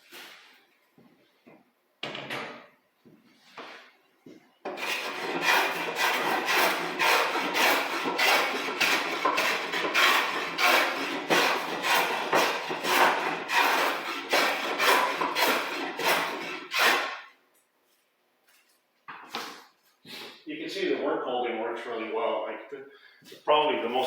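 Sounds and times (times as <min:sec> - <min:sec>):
plane shaving wood: 0:04.7 - 0:17.2.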